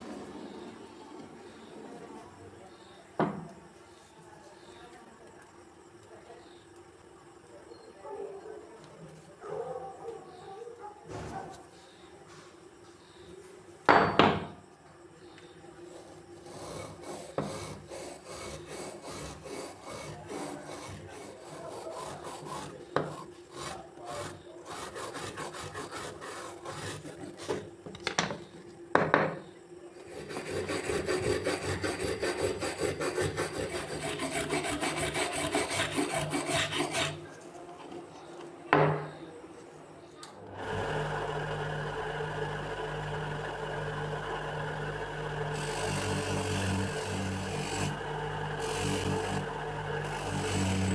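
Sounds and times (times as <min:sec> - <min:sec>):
filing strokes on a wrench: 0:15.9 - 0:27.7, 0:30.0 - 0:37.3, 0:45.5 - 0:50.9.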